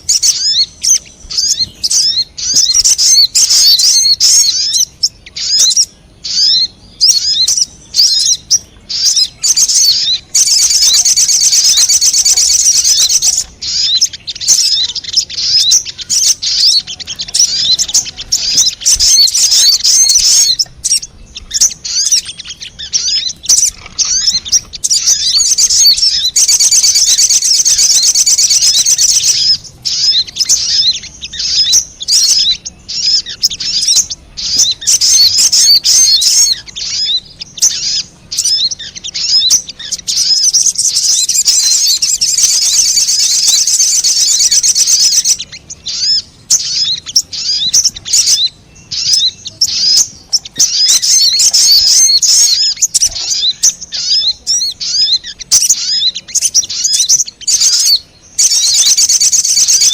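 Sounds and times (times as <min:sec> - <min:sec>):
bird chirping rapidly: 0:00.0 - 0:59.9.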